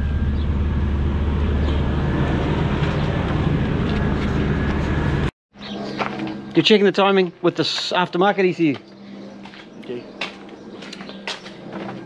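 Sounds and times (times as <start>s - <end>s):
car engine idling: 0.0s - 5.2s.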